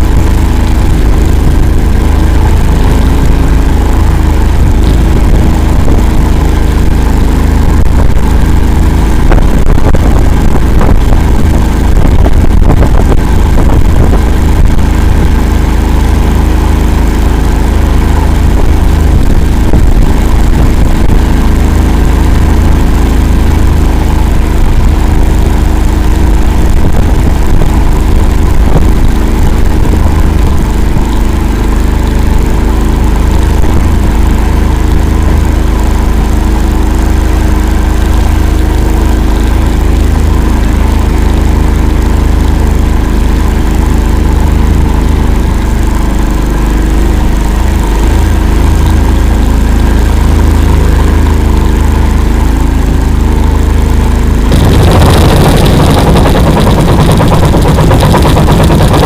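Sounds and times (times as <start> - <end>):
vehicle engine running loudly: 0.0 - 59.0.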